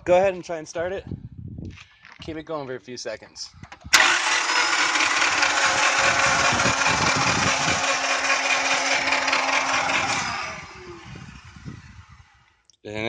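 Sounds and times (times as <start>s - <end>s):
car engine cranking without catching: 3.7s - 12.4s.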